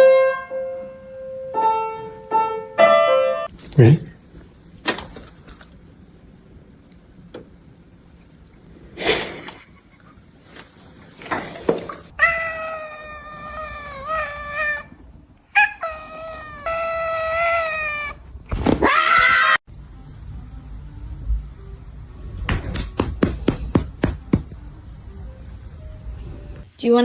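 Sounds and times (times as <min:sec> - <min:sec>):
cat yowling: 0:12.1 - 0:19.6.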